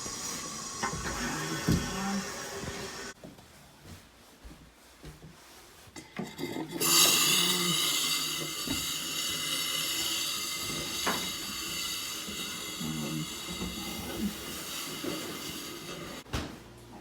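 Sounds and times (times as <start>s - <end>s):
compressed air hissing from faucet: 0.0s - 3.2s, 6.8s - 16.2s.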